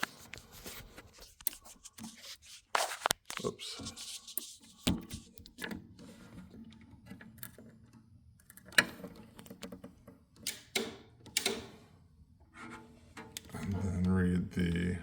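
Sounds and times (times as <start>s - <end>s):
handling rustle: 0.0s - 5.3s.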